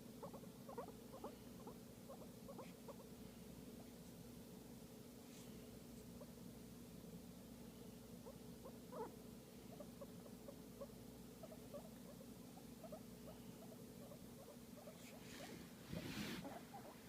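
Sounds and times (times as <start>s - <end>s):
guinea pig squeaking: 0.0s - 3.1s, 8.1s - 17.0s.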